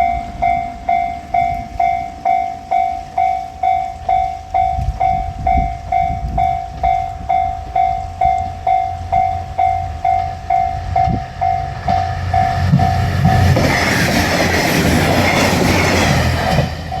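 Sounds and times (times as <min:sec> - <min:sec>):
level crossing bell ringing: 0:00.0 - 0:12.7
diesel railcar rumble: 0:00.0 - 0:17.0
train wheels clacking on rails: 0:00.0 - 0:17.0.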